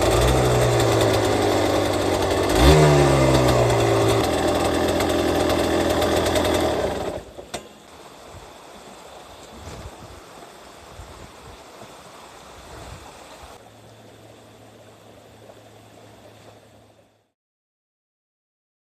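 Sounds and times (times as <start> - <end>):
two-stroke engine idling: 0.0 - 7.7
running water of stream: 0.0 - 17.4.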